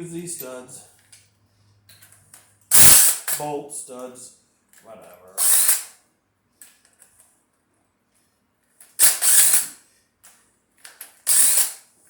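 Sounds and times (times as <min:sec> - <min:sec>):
power tool burst: 0:02.7 - 0:03.4, 0:05.4 - 0:05.9, 0:09.0 - 0:09.7, 0:11.3 - 0:11.8.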